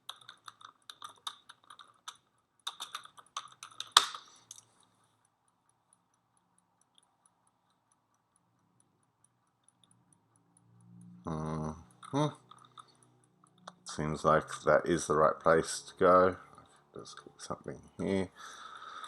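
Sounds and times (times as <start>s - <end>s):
keyboard typing: 0.0s - 7.8s, 8.7s - 13.9s.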